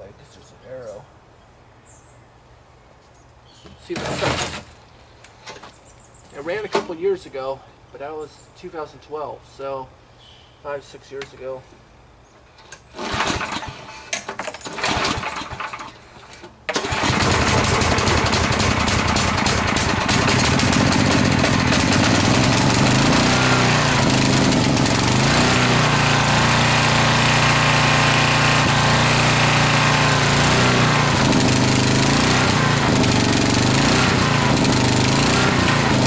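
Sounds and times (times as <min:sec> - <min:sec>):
generator engine running: 0:16.8 - 0:36.0.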